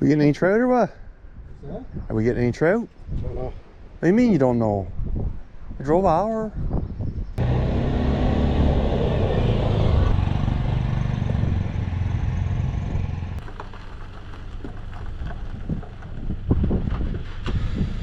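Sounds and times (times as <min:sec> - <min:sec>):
vehicle engine running: 0:07.4 - 0:16.9.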